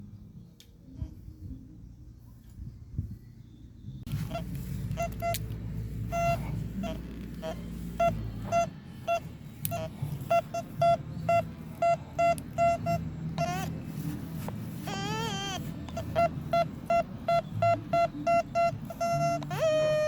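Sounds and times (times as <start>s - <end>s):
low steady rumble: 0.0s - 20.0s
metal detector beeping: 4.1s - 20.0s.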